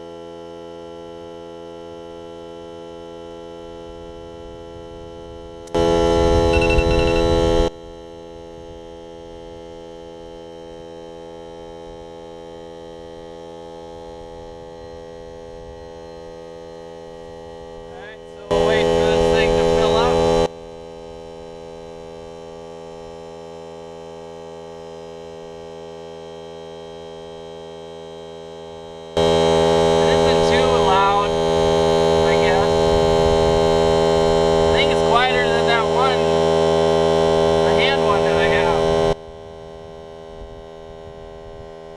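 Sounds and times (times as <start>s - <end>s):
air compressor humming: 17.4s - 20.5s, 29.1s - 39.2s.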